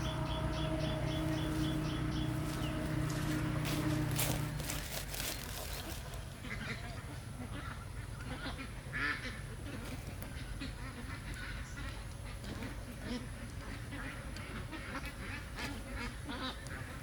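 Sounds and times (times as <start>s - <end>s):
ducks quacking: 0.0s - 17.0s
low background rumble: 0.0s - 17.0s.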